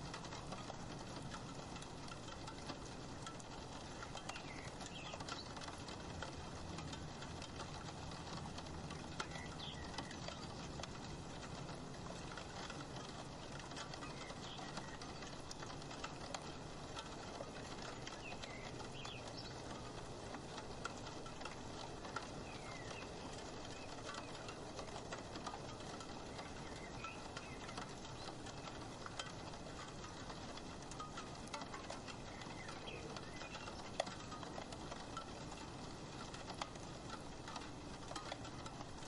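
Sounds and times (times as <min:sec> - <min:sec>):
rain pattering on a window: 0:00.0 - 0:39.0.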